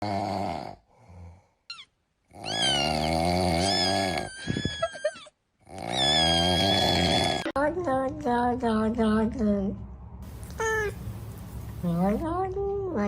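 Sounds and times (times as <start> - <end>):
cat yowling: 2.4 - 3.0, 10.4 - 11.0
cat meowing: 10.4 - 11.0.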